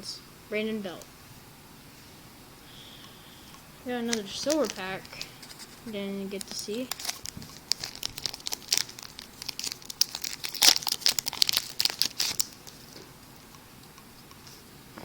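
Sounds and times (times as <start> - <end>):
plastic wrapper tearing and crinkling: 4.1 - 13.1.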